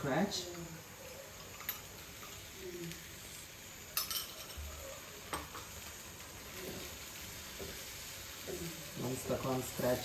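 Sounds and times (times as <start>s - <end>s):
sauce sizzling in a pan: 0.0s - 10.0s
spoon clinking against pan: 4.0s - 4.7s.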